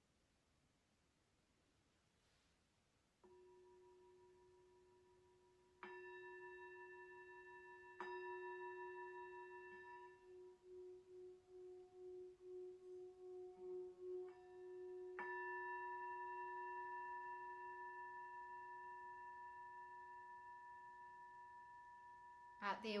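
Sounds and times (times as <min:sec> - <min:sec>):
low singing bowl tone: 0:03.2 - 0:22.7.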